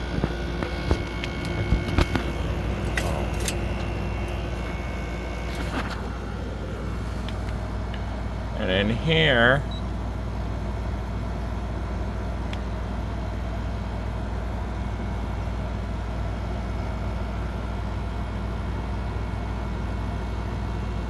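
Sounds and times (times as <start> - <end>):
condenser fan whoosh: 0.0 - 8.9
air conditioner compressor hum: 0.0 - 21.0.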